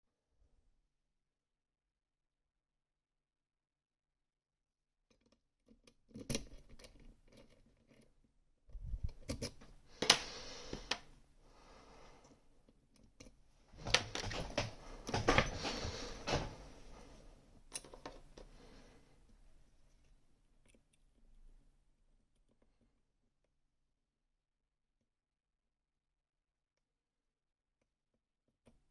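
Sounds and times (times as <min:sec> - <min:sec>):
metal lock clicks and scraping: 0:06.2 - 0:08.0, 0:09.0 - 0:10.2.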